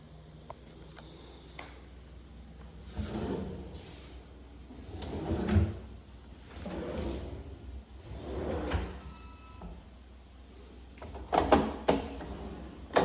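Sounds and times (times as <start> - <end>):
drawer sliding open and shut: 2.9 - 4.2, 4.8 - 9.2, 11.0 - 13.0.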